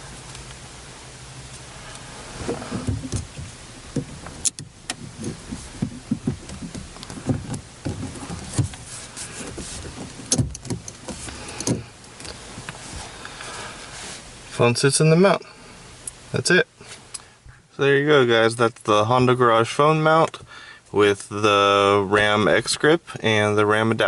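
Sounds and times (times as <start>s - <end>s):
phone handling knocks and rubbing: 2.4s - 11.9s.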